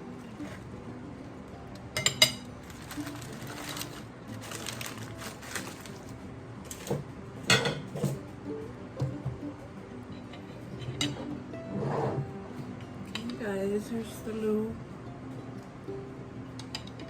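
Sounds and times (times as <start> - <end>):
soft background music: 0.0 - 17.0
dishes and cutlery clinking: 1.9 - 4.0, 6.7 - 8.3, 10.1 - 12.2, 16.6 - 17.0.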